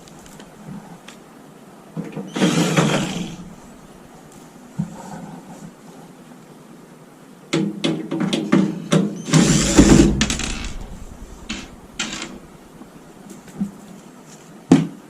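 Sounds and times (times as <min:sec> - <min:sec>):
rattling scrape on metal: 0:02.4 - 0:04.1, 0:09.3 - 0:13.1.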